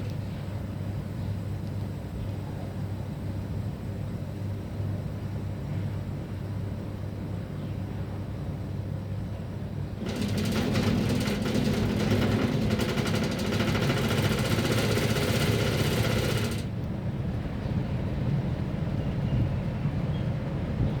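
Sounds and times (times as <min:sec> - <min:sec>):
air conditioner hum: 0:04.7 - 0:21.0
loud rattling buzz: 0:09.9 - 0:16.8.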